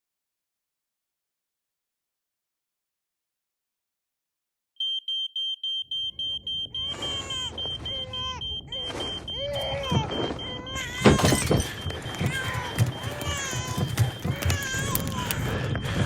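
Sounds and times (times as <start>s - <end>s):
smoke alarm beeping: 4.8s - 16.0s
voices crying out: 6.2s - 16.0s.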